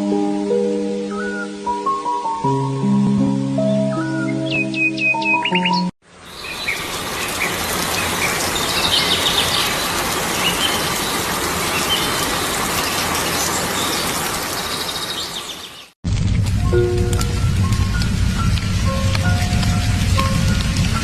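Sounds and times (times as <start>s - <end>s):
small birds chirping: 4.0s - 16.0s
steady rain falling: 6.1s - 21.0s.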